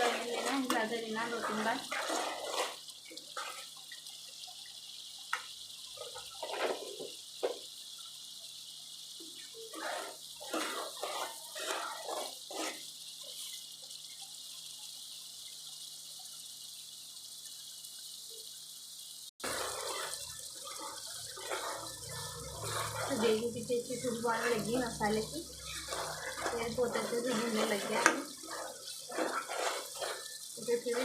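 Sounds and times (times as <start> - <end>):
spoon scraping pan: 0.0 - 3.8, 6.0 - 7.7, 9.2 - 13.6, 19.4 - 31.0
paste sizzling in hot oil: 0.0 - 31.0.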